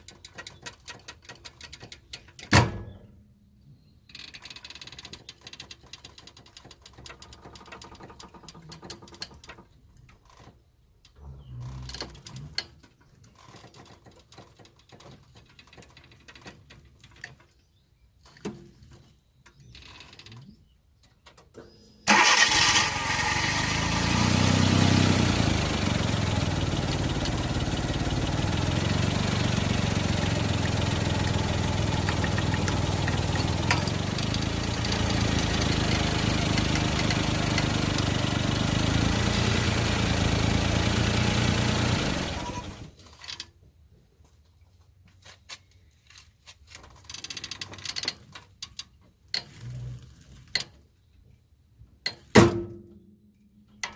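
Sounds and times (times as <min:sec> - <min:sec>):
car engine running: 0:23.1 - 0:42.8.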